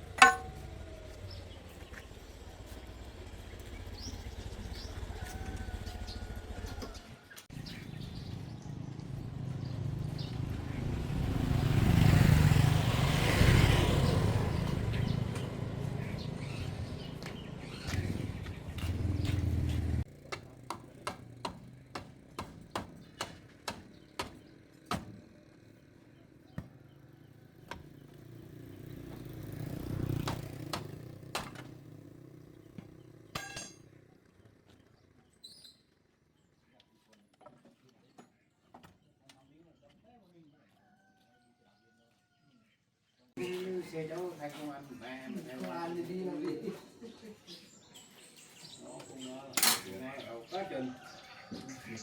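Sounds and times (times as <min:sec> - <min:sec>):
vehicle engine rumbling: 0:00.0 - 0:06.9, 0:07.6 - 0:22.4
sharp knocks on metal: 0:00.2 - 0:00.6, 0:20.3 - 0:25.2.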